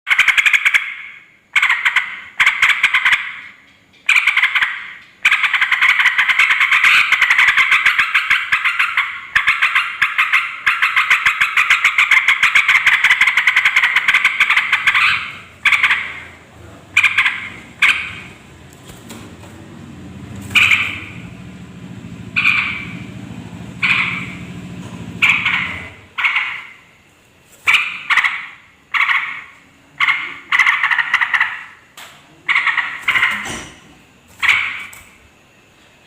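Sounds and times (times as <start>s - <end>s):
bulbul chattering calls: 4.1s - 18.4s, 20.4s - 21.3s, 22.4s - 23.1s, 23.8s - 24.5s, 25.2s - 26.8s.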